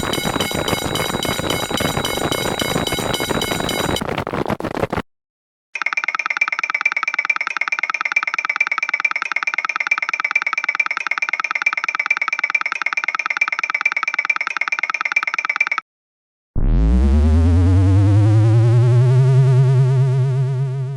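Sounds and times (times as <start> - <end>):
railroad crossing bell ringing: 0.0 - 3.9.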